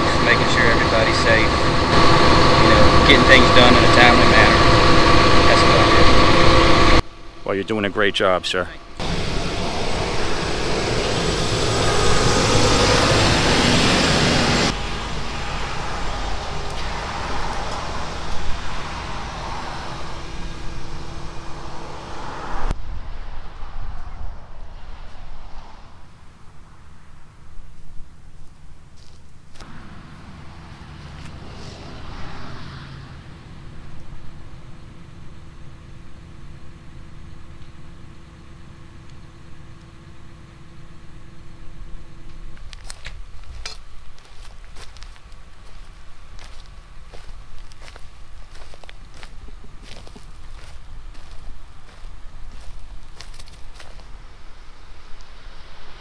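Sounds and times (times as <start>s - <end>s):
engine idling: 0.0s - 22.8s, 29.6s - 56.0s
motor vehicle rumble: 0.0s - 56.0s
rushing hiss: 9.0s - 22.7s.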